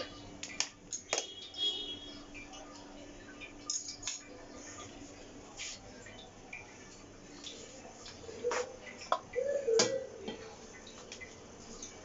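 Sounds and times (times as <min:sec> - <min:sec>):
utensils clinking against dishes: 0:03.4 - 0:04.9.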